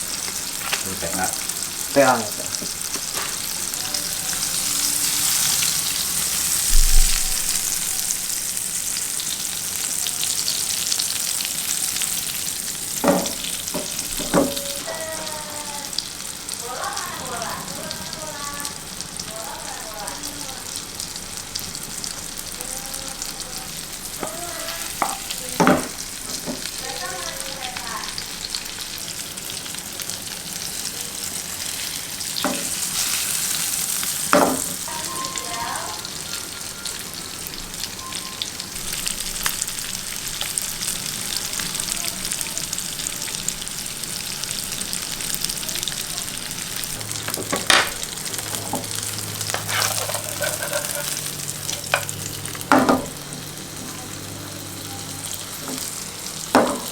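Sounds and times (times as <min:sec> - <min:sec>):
steak sizzling in a pan: 0:00.0 - 0:56.9.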